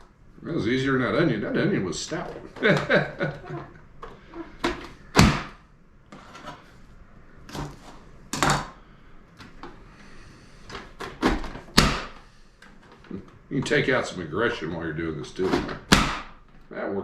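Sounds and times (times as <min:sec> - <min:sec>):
vegetable chopper banging: 0:05.1 - 0:05.6, 0:11.2 - 0:12.2, 0:15.4 - 0:16.4.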